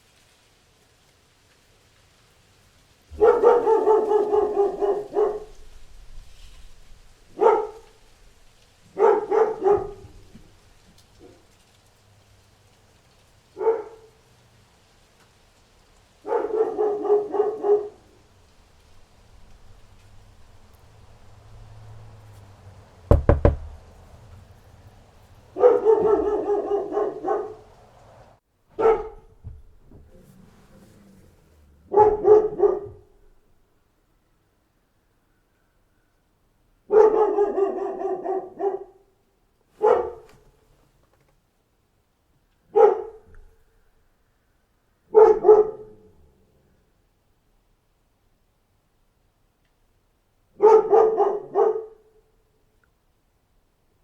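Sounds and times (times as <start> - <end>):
dog barking: 3.1 - 5.7, 7.3 - 8.1, 8.9 - 10.4, 11.2 - 11.5, 13.5 - 14.2, 16.2 - 18.2, 25.5 - 27.8, 28.7 - 29.4, 31.8 - 33.3, 36.8 - 39.2, 39.8 - 40.5, 42.7 - 43.6, 45.1 - 46.4, 50.5 - 52.3
sharp knocks: 23.1 - 23.8.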